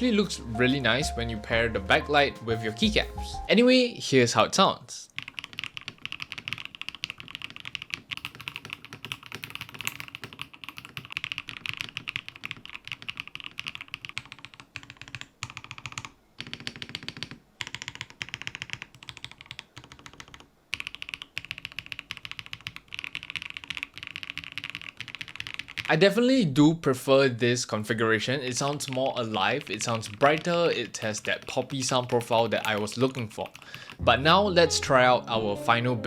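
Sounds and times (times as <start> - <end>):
mechanical keyboard typing: 5.2 - 25.9, 28.5 - 34.0.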